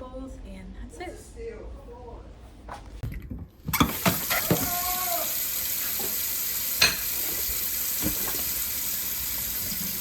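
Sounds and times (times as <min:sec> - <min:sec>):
kitchenware clinking: 0:06.8 - 0:07.4.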